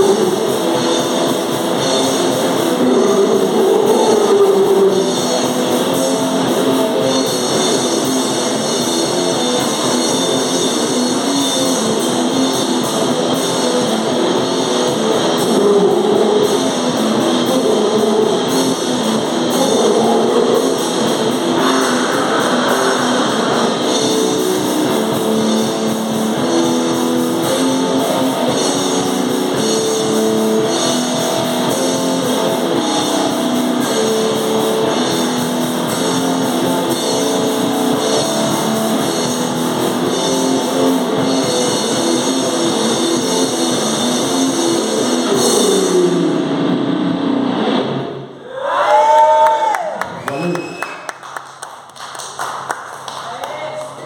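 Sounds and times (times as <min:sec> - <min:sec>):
drum kit: 0:00.0 - 0:48.2
distorted electric guitar: 0:00.0 - 0:48.4.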